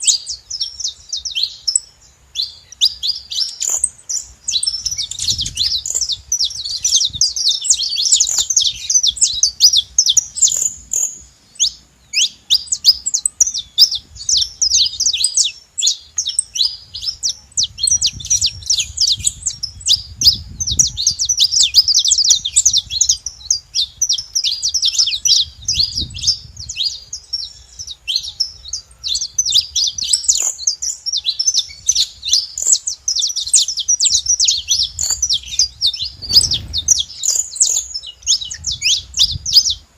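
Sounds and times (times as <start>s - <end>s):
finches chirping: 0.0s - 39.9s.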